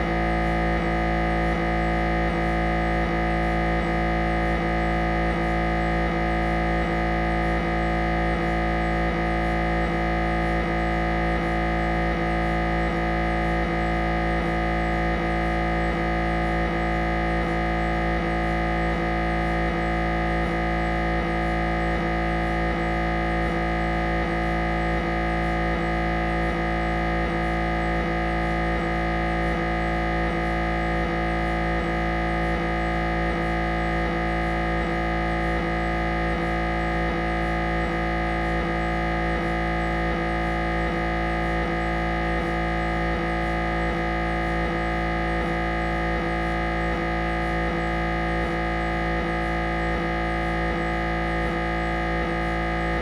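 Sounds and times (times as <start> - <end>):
mri scanner drone: 0.0 - 53.0.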